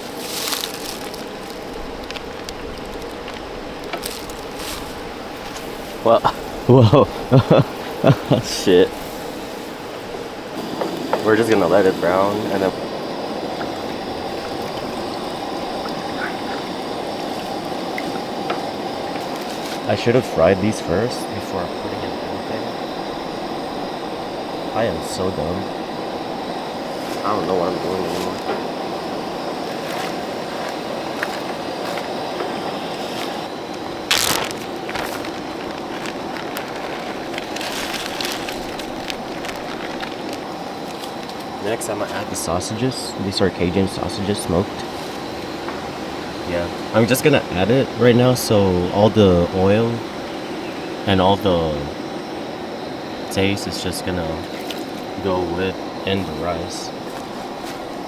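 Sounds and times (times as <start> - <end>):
roux cooking in a pot: 10.5 - 23.0, 28.0 - 49.5.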